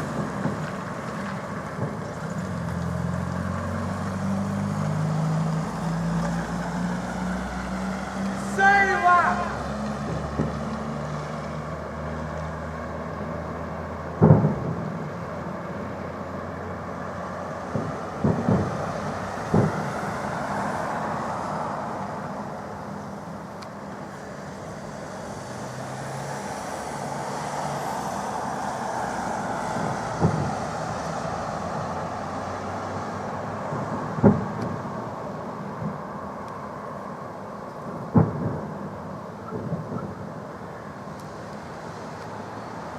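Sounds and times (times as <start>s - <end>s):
fireworks bangs: 0.0s - 3.2s, 8.4s - 10.7s, 14.2s - 15.1s, 17.6s - 20.7s, 29.6s - 31.9s, 33.5s - 36.0s, 37.8s - 42.3s.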